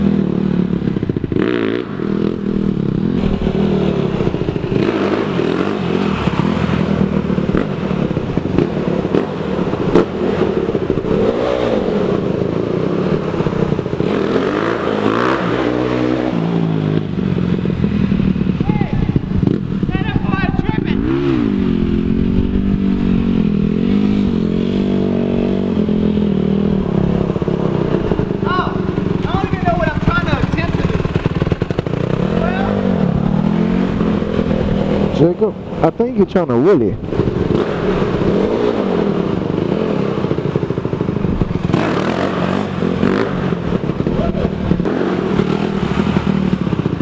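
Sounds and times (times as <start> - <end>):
dirt bike engine revving: 0.0 - 47.0.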